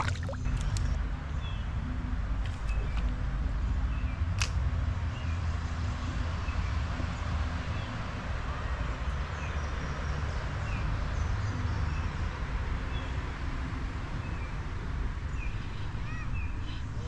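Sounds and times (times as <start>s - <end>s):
rushing water: 0.0s - 1.0s
small birds chirping: 15.3s - 17.0s.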